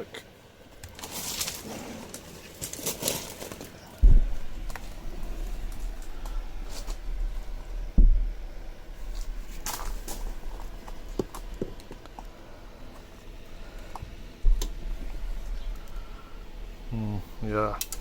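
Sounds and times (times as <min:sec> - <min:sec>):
heavy dull thumps: 0:04.0 - 0:16.3.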